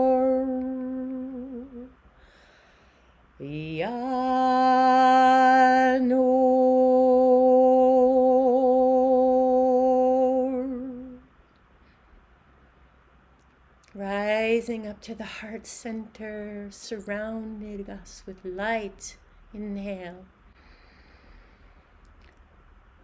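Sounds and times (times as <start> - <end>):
voice chanting long tones: 0.0 - 2.0, 3.4 - 11.3.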